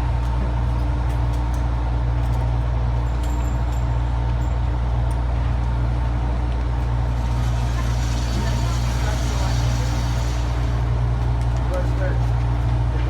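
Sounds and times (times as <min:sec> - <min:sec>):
low mechanical rumble: 0:00.0 - 0:13.0.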